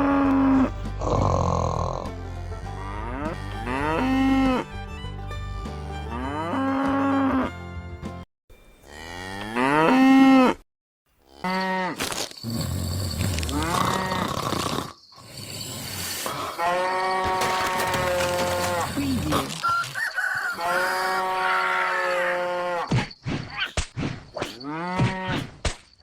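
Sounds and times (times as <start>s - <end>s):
cow mooing: 0.0s - 4.6s, 8.8s - 10.6s, 11.2s - 12.0s, 16.5s - 19.6s, 20.5s - 22.9s.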